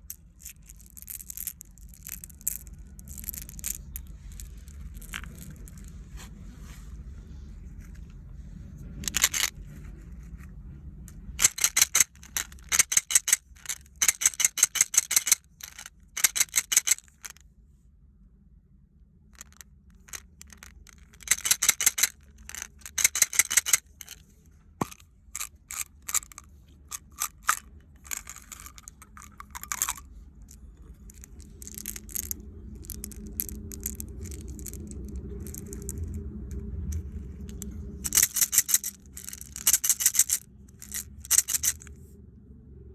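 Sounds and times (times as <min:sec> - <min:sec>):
small hard objects clicking and rattling: 0:00.0 - 0:06.0, 0:09.0 - 0:09.5, 0:11.4 - 0:17.4, 0:19.4 - 0:24.2, 0:24.8 - 0:36.2, 0:37.5 - 0:41.9
faint low hum: 0:00.0 - 0:42.9.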